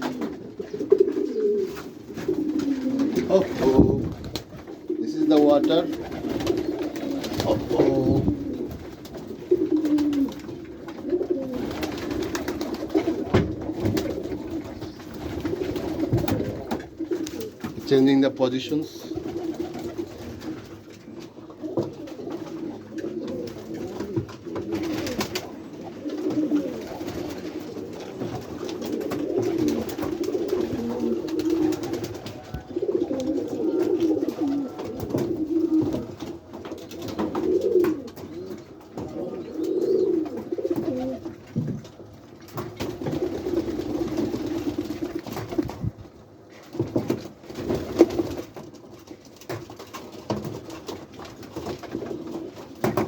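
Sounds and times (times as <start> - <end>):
pigeons cooing: 0.0 - 46.9, 49.8 - 53.0
wing flaps: 1.0 - 17.6, 22.0 - 36.1.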